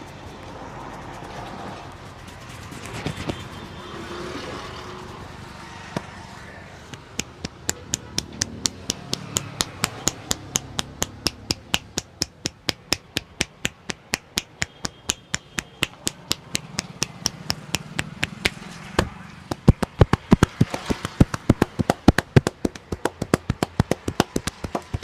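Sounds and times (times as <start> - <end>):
hands slapping a head: 6.9 - 25.0.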